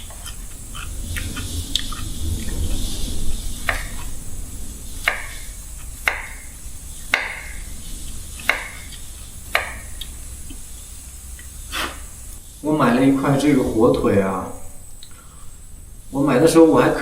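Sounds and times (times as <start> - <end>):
knife chopping on cutting board: 8.4 - 8.8.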